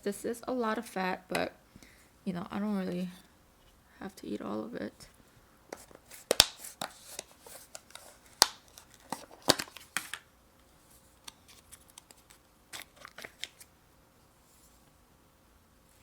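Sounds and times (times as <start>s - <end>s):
packaging crinkling: 5.8s - 10.2s, 11.1s - 13.7s.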